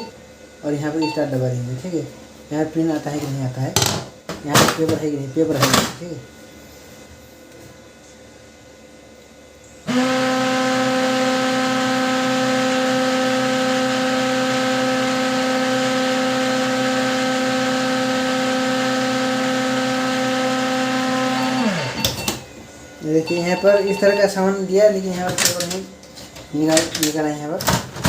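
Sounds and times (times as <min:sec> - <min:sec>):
printer motor humming: 0:09.9 - 0:27.2.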